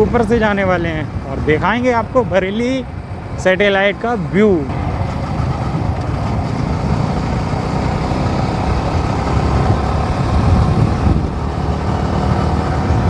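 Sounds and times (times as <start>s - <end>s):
wind and tyre rumble: 0.0s - 13.0s
motorcycle engine running: 4.7s - 13.0s.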